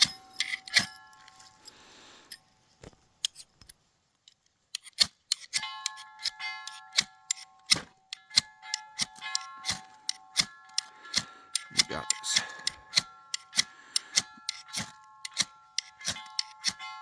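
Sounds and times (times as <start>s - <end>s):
steel striking flint: 0.0s - 2.5s, 4.8s - 17.0s
faint metallic ringing: 0.0s - 2.6s, 5.6s - 11.7s.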